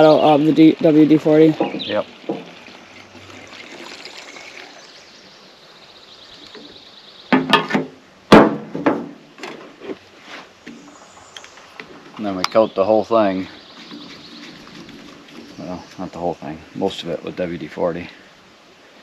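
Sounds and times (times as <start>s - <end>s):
sharp knock: 7.3s - 9.2s.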